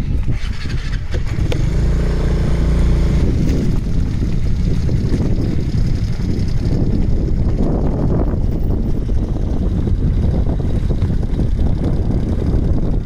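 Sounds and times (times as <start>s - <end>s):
road and wind rumble: 0.0s - 13.0s
vehicle engine hum: 0.0s - 13.0s.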